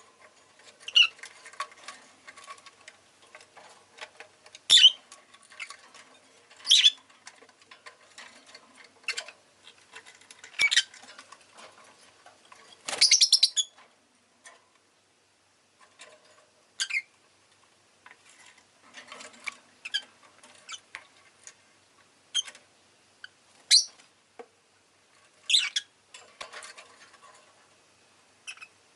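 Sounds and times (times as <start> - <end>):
bird chirping: 0.8 - 1.2, 4.7 - 5.8, 6.6 - 7.0, 10.5 - 11.0, 12.9 - 13.8, 16.8 - 17.1, 23.7 - 24.0, 25.5 - 25.9, 28.4 - 28.8.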